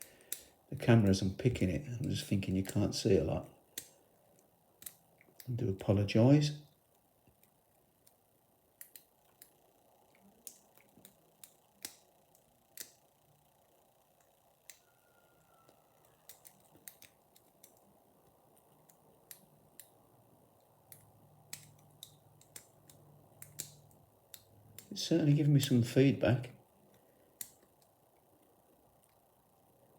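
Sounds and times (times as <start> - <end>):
lock pick metallic clicks: 16.0 - 17.9, 20.6 - 24.9.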